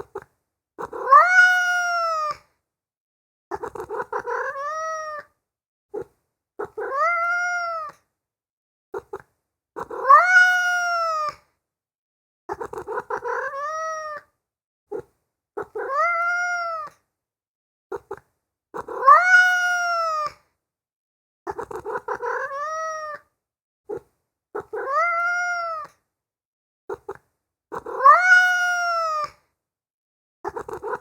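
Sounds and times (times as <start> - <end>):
cat meowing: 0.8 - 2.4, 3.6 - 5.3, 6.6 - 8.0, 9.8 - 11.4, 12.6 - 14.3, 15.6 - 17.0, 18.8 - 20.4, 21.5 - 23.3, 24.6 - 26.0, 27.8 - 29.4
cat stuttering chirp: 0.8 - 2.4, 3.5 - 5.2, 6.0 - 7.9, 9.8 - 11.4, 12.5 - 14.2, 14.9 - 16.9, 18.8 - 20.3, 21.5 - 23.2, 24.6 - 25.9, 26.9 - 29.3, 30.5 - 31.0.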